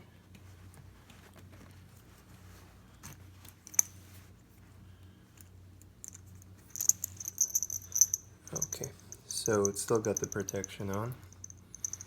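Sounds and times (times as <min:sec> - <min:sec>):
low steady hum: 0:00.0 - 0:12.0
faint handling: 0:06.0 - 0:12.0.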